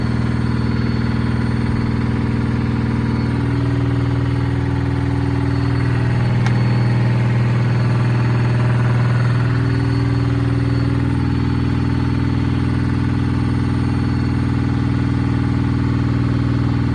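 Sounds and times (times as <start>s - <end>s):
washing machine humming: 0.0s - 14.0s
higher tone: 0.0s - 15.0s
sharp click: 6.4s - 6.7s.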